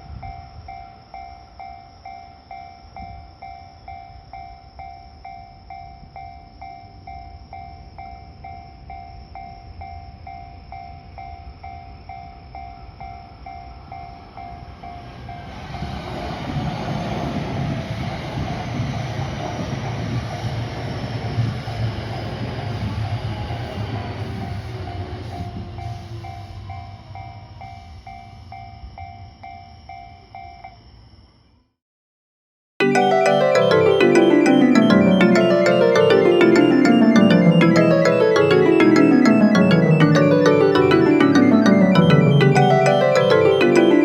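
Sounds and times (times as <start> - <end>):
electric train rumbling past: 13.7 - 28.5
level-crossing bell clanging: 32.8 - 44.0.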